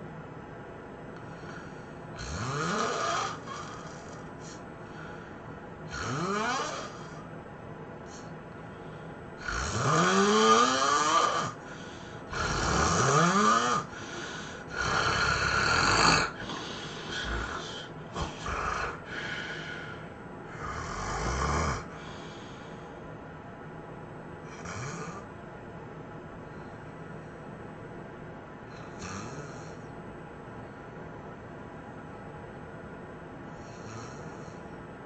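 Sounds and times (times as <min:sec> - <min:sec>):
person snoring heavily: 0:01.3 - 0:05.2, 0:05.9 - 0:07.2, 0:09.4 - 0:22.6, 0:24.5 - 0:25.3, 0:28.7 - 0:29.9, 0:33.6 - 0:34.6.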